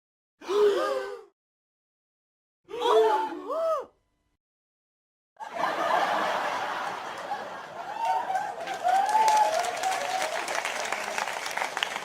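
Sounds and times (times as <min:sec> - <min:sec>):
crowd laughing: 0:05.4 - 0:12.0
audience clapping: 0:06.5 - 0:12.0.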